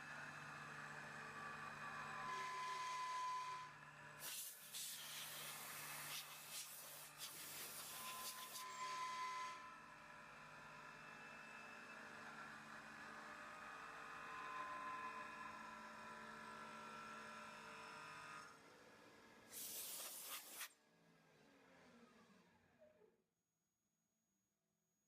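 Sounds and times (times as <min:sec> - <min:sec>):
short loud hiss: 0:19.5 - 0:20.7.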